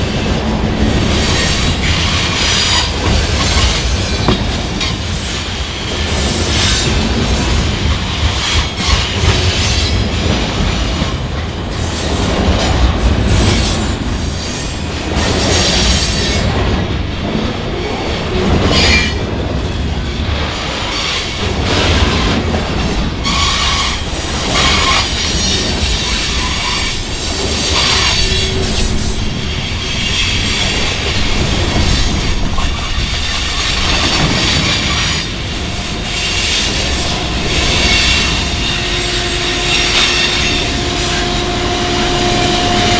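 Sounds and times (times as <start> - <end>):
wheels clacking over rail joints: 0.0 - 39.0
freight train rumbling past: 0.0 - 42.9
train wheels squealing: 23.2 - 35.4.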